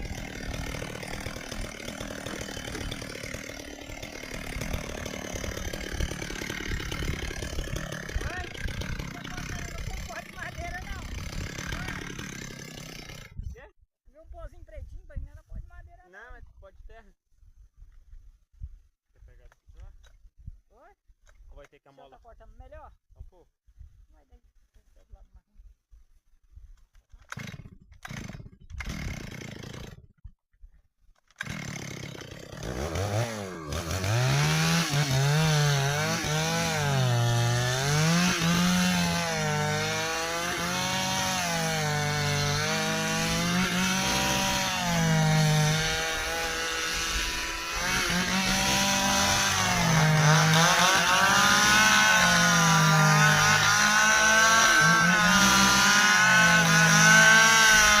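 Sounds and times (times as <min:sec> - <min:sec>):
chainsaw cutting wood: 0:00.0 - 0:13.4, 0:27.0 - 0:30.3, 0:31.2 - 0:58.0.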